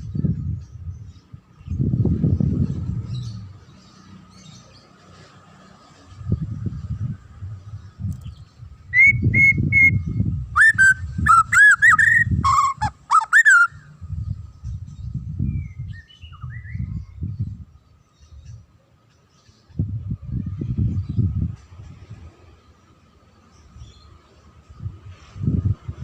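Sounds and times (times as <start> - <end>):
bird singing whistled notes: 8.1 - 18.6.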